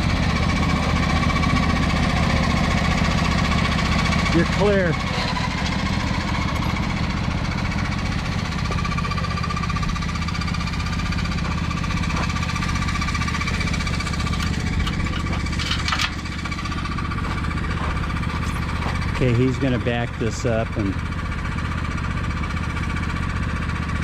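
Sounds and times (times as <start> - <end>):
tractor engine running: 0.0 - 24.0.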